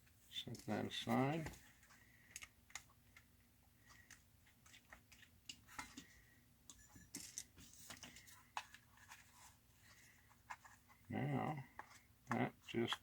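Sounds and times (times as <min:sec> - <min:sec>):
small parts clicking and scraping: 0:06.7 - 0:09.2.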